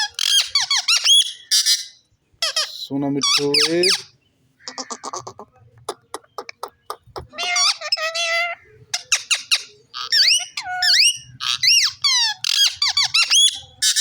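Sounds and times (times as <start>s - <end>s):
parrot squawking: 0.0s - 14.0s.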